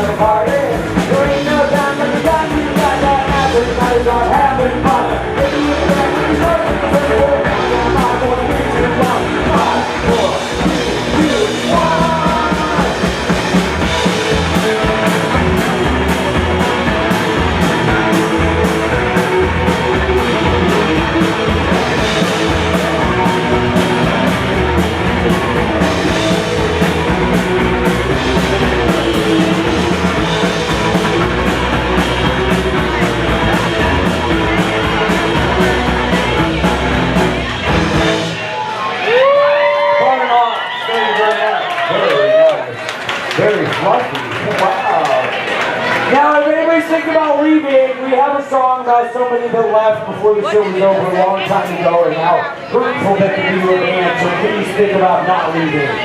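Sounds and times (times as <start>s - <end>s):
person singing: 0.0s - 13.3s
live rock band playing: 0.0s - 56.0s.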